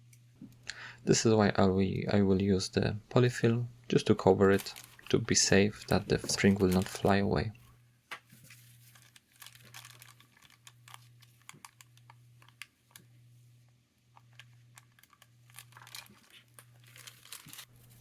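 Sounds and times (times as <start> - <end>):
plastic film crinkling: 4.4 - 7.2, 8.3 - 13.1, 14.1 - 18.0.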